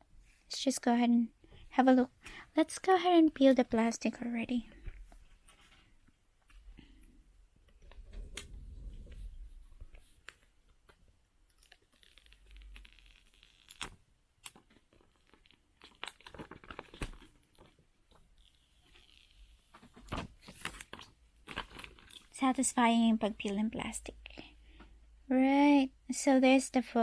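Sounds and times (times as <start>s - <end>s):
plastic film peeling: 9.8s - 22.4s.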